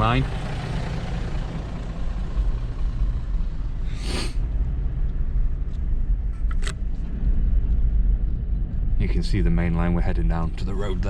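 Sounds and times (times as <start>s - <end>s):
vehicle driving rumble: 0.0s - 11.0s
short hiss: 3.9s - 4.4s.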